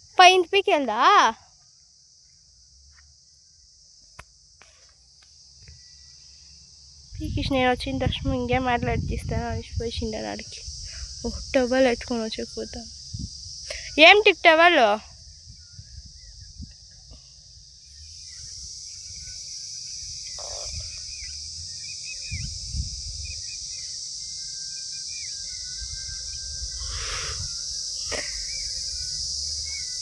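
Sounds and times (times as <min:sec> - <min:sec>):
high-pitched insect chirring: 0:00.0 - 0:30.0
small bird chirps: 0:24.9 - 0:30.0.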